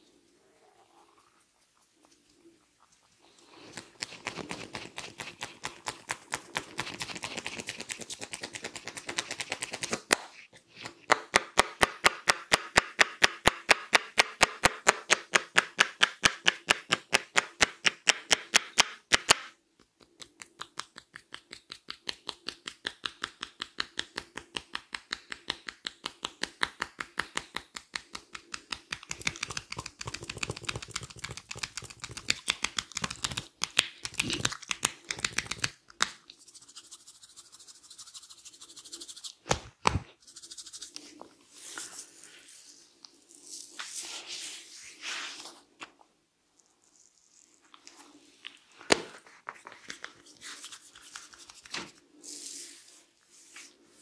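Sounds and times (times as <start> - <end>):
hands tapping on head: 11.1 - 36.2.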